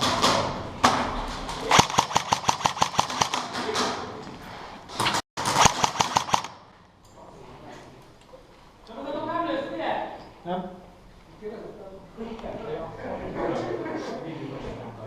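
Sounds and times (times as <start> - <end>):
airsoft guns firing rapid bursts: 1.7 - 3.8, 5.4 - 6.6.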